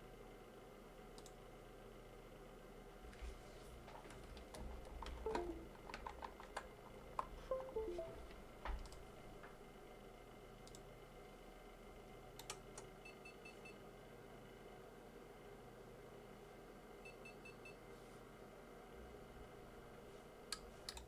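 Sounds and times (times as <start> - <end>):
keyboard and mouse clicks: 4.4 - 8.2
high-pitched beeps: 5.2 - 5.7, 7.5 - 8.3.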